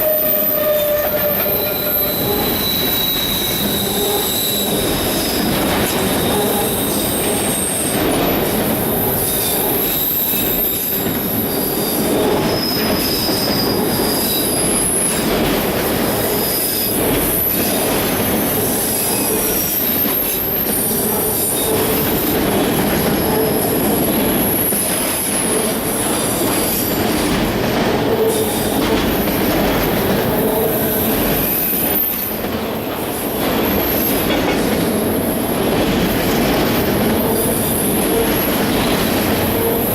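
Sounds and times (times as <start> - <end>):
high wheel squeals: 0.0 - 7.9
train wheels rumbling on rail: 0.0 - 39.9.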